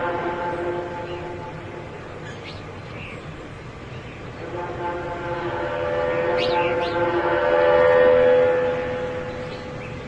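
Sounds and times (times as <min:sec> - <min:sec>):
horn-like drone: 0:00.0 - 0:02.2, 0:04.4 - 0:10.0.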